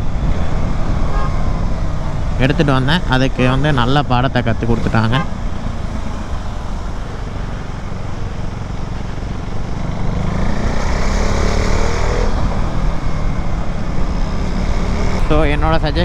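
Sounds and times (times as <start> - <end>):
motorcycle engine rumble: 0.0 - 11.6
road traffic noise: 0.0 - 16.0.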